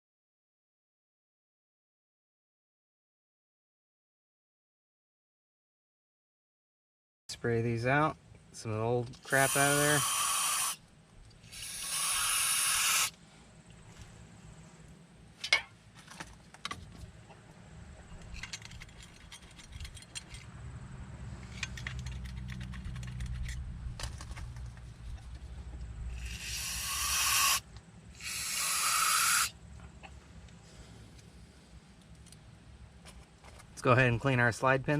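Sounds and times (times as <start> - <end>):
aerosol spray hissing: 9.3 - 10.8, 11.5 - 13.1, 26.2 - 27.6, 28.2 - 29.5
handling clicks and knocks: 15.4 - 17.5, 18.1 - 20.5, 21.4 - 25.8.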